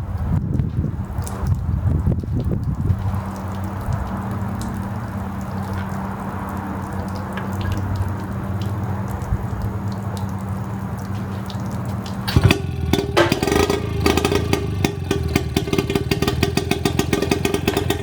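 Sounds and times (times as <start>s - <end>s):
water splashing and dripping: 0.1s - 18.0s
two-stroke outboard engine running: 12.2s - 18.0s.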